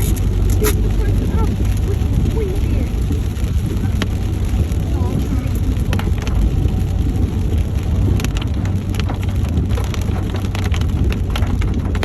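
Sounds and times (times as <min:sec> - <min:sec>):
engine and road rumble: 0:00.0 - 0:12.0
rain striking a vehicle: 0:00.0 - 0:12.0.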